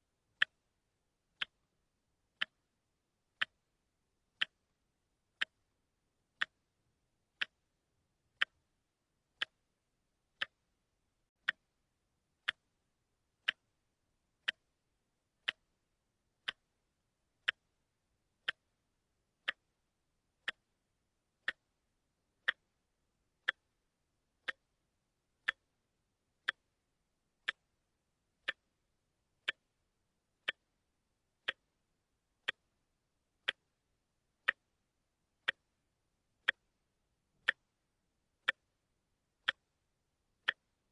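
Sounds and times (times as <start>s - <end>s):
watch ticking: 0.3s - 40.9s.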